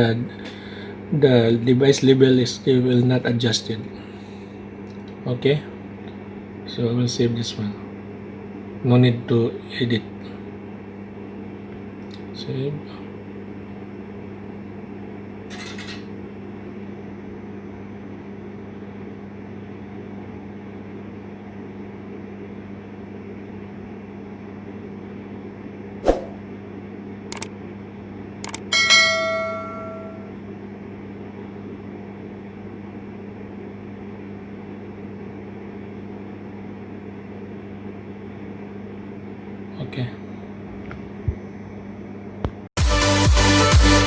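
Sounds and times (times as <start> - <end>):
steady low hum: 0.0 - 23.7
sharp clicks: 27.3 - 27.5, 28.4 - 28.7
bell-like ding: 28.7 - 30.3.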